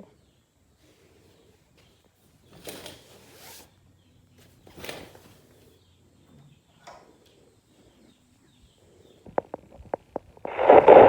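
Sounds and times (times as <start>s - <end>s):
scraping rustles: 0.8s - 3.8s.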